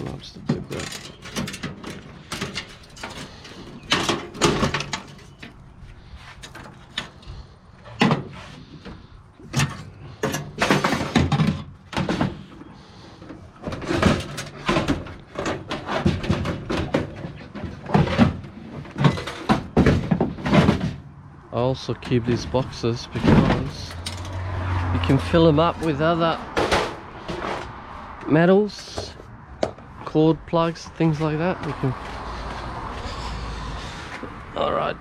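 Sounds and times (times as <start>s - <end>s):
metal computer parts clunking: 0.0s - 5.6s, 6.4s - 12.5s, 13.6s - 21.0s, 22.0s - 24.4s.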